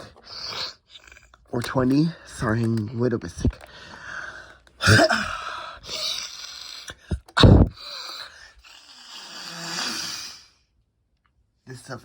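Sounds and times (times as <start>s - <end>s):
person sniffing and snorting: 0.0s - 1.3s, 4.8s - 10.5s.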